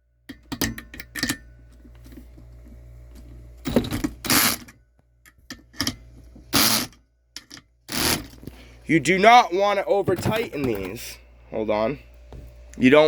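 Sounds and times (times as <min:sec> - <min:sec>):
drill motor humming: 0:06.6 - 0:06.9, 0:07.9 - 0:08.4.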